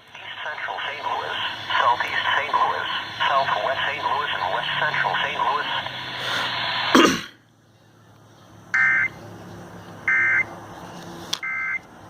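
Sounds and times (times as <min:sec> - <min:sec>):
automated voice: 0:00.0 - 0:07.0.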